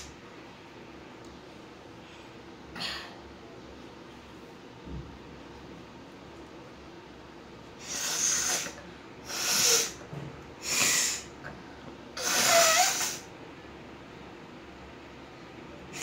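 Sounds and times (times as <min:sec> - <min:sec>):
woman blowing her nose: 0:07.8 - 0:10.0, 0:10.6 - 0:11.3, 0:12.2 - 0:13.3.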